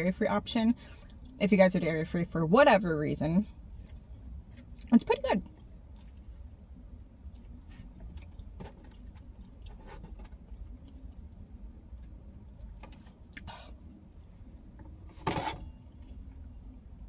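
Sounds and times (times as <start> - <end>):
steady low rumble: 0.0 - 15.2
person chewing food: 5.5 - 14.2.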